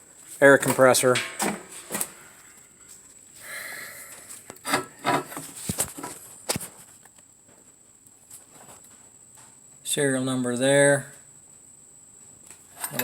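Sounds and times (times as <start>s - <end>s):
scraping and rubbing: 4.6s - 6.8s.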